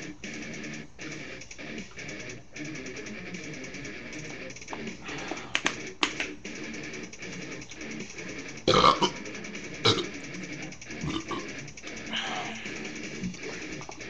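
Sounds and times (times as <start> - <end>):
background music: 0.0 - 14.0
man burping loudly: 8.7 - 9.2, 11.1 - 11.4.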